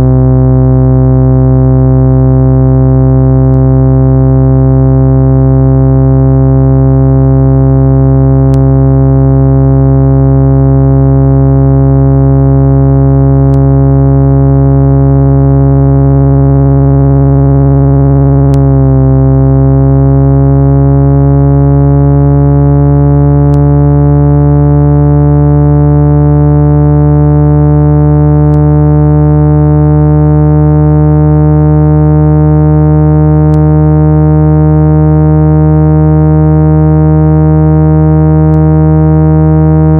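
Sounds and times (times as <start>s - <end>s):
low electronic drone: 0.0s - 39.9s.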